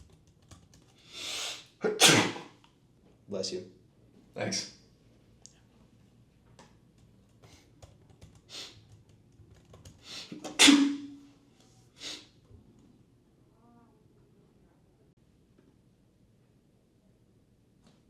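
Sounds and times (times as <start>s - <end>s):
man sneezing: 1.4s - 2.6s, 10.4s - 11.0s.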